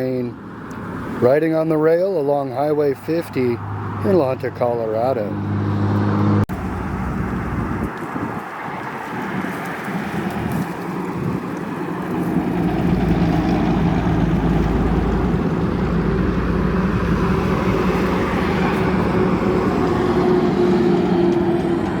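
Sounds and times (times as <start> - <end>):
deep train rumble: 5.4 - 8.0, 10.3 - 22.0
train engine drone: 11.8 - 22.0.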